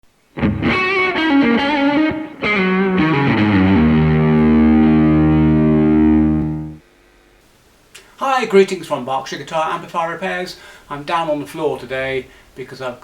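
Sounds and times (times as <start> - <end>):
distorted electric guitar: 0.3 - 6.8.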